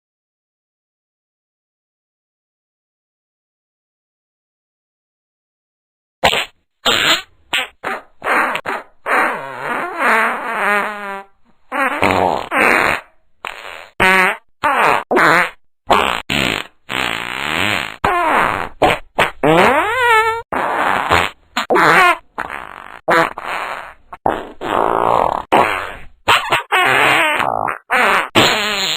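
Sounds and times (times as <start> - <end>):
fart noises: 6.2 - 28.9.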